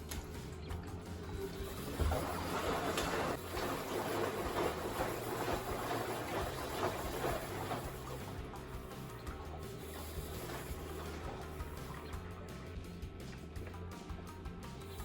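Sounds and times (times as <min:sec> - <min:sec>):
drive belt rustling: 0:00.0 - 0:12.1
washing machine drum turning: 0:00.0 - 0:15.0.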